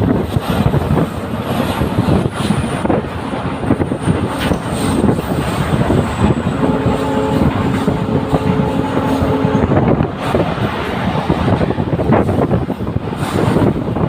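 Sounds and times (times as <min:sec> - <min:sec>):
train running noise: 0:00.0 - 0:14.0
train wheels clattering on rails: 0:00.0 - 0:14.0.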